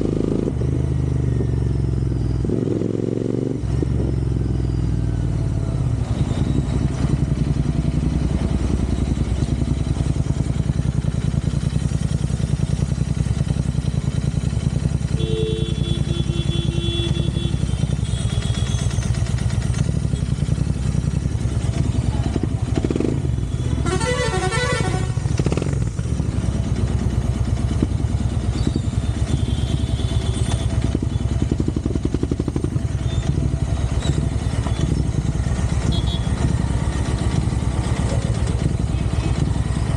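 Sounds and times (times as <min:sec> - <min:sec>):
motorcycle engine running: 0:00.0 - 0:39.9
vehicle horns: 0:15.0 - 0:18.9, 0:22.9 - 0:25.8, 0:29.0 - 0:31.4, 0:35.8 - 0:36.6.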